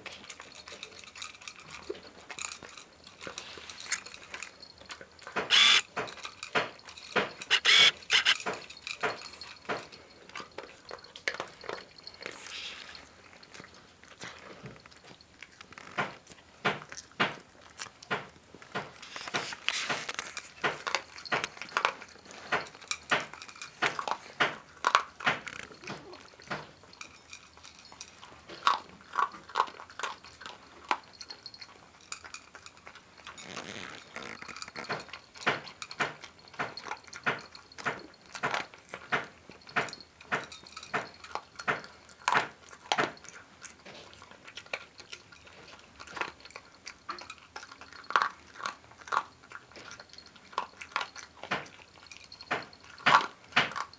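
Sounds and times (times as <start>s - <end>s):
dog crunching and chewing food: 0.0s - 53.9s.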